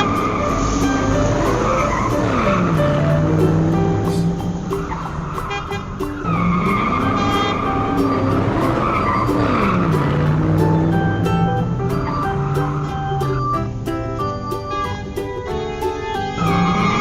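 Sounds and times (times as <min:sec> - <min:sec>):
race car engine revving: 0:00.0 - 0:12.8
tyre skids: 0:00.0 - 0:17.0
upbeat music: 0:00.0 - 0:17.0.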